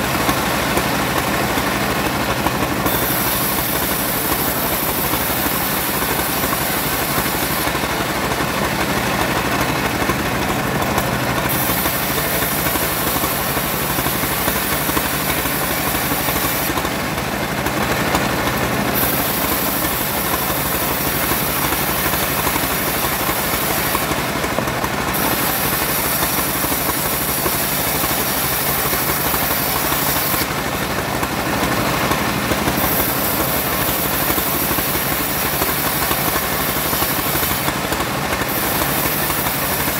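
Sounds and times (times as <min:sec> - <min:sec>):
bandsaw engine drone: 0:00.0 - 0:39.9
high hiss of sawing wood: 0:02.9 - 0:07.7, 0:11.5 - 0:16.8, 0:19.0 - 0:24.1, 0:25.2 - 0:30.5, 0:32.8 - 0:37.7, 0:38.4 - 0:39.9.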